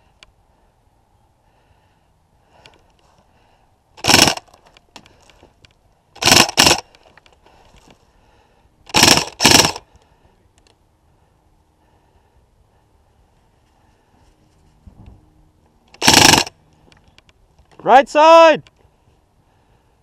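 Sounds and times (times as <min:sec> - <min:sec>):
electric gun firing bursts: 0:04.0 - 0:04.5, 0:06.2 - 0:06.9, 0:08.9 - 0:09.8, 0:16.0 - 0:16.6.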